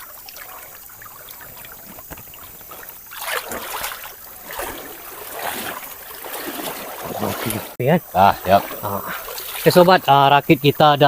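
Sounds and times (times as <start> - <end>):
river water trickling and splashing: 0.0 - 10.9
loud water splash: 2.7 - 7.8.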